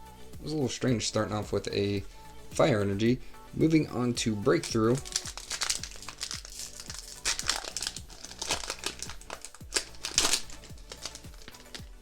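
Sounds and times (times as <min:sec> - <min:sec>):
background music with steady beat: 0:00.0 - 0:12.0
foil wrapper crinkling and tearing: 0:04.6 - 0:12.0.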